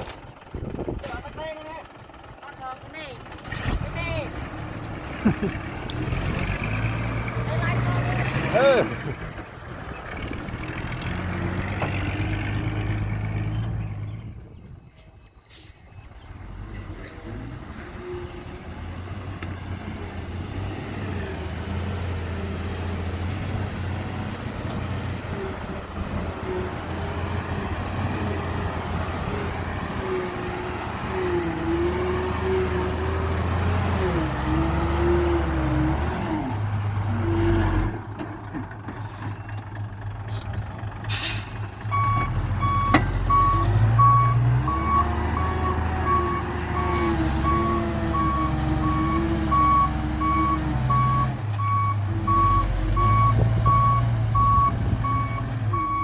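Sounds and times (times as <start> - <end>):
heavy diesel machinery running: 0.0 - 14.7, 15.5 - 56.0
reversing alarm beeping: 41.9 - 56.0.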